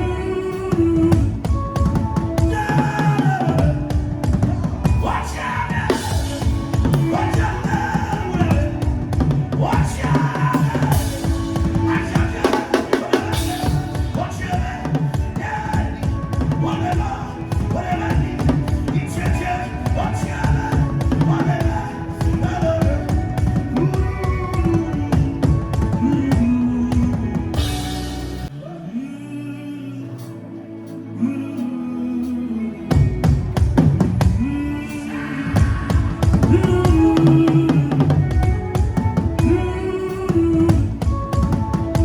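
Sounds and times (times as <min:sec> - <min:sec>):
fast driving drum strokes: 0:05.9 - 0:28.5, 0:35.6 - 0:39.7.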